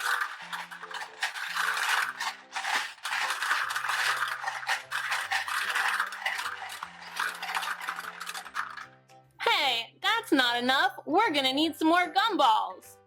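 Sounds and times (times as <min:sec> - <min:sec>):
gumballs rattling on plastic: 0:00.0 - 0:08.9
soft background music: 0:00.0 - 0:13.0.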